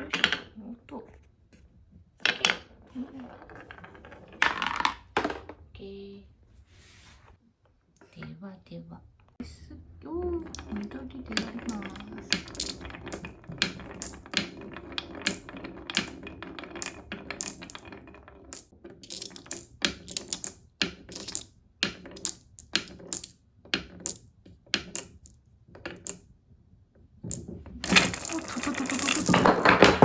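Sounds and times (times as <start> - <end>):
marbles clicking on wooden run: 0.0 - 1.2, 2.2 - 5.6, 10.1 - 26.3, 27.2 - 30.0.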